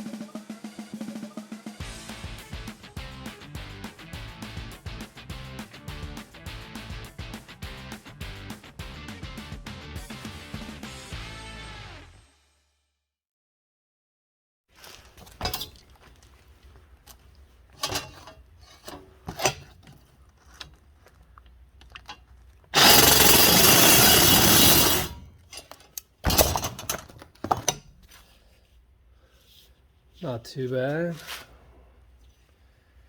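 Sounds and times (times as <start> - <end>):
knocks and scrapes: 14.8 - 29.8
power saw cutting aluminum: 22.8 - 25.7.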